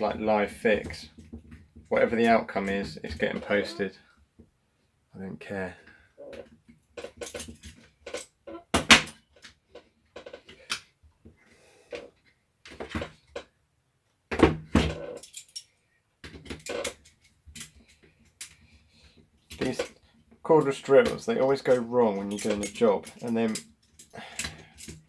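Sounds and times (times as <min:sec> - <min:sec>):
tools clicking and knocking: 0:06.4 - 0:09.6, 0:14.3 - 0:18.6, 0:21.0 - 0:25.0.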